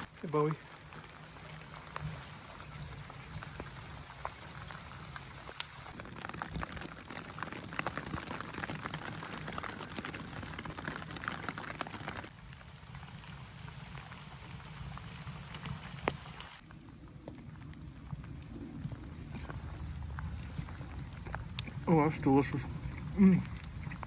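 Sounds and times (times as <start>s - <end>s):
fire crackling with sharp pops: 0.0s - 24.0s
fish sizzling over wood fire: 0.0s - 24.0s.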